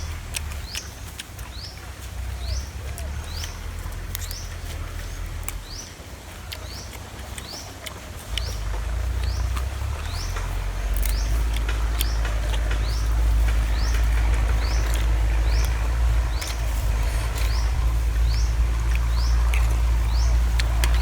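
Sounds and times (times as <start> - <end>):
steady low rumble: 8.0 - 21.0.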